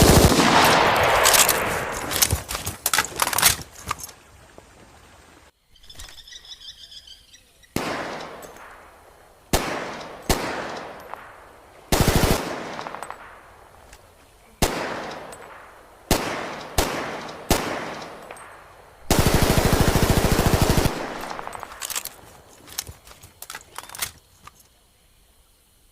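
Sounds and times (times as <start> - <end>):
submachine gun firing: 0.0 - 2.5, 7.8 - 13.9, 14.6 - 22.3
light clicks and rattles: 1.2 - 4.3, 21.2 - 24.8.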